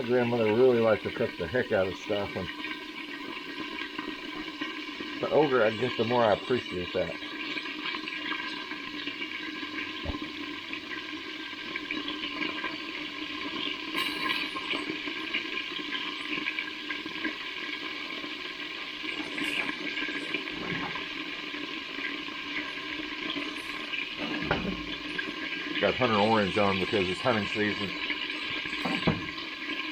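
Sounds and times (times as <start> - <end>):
chicken frying in hot oil: 0.0 - 29.9.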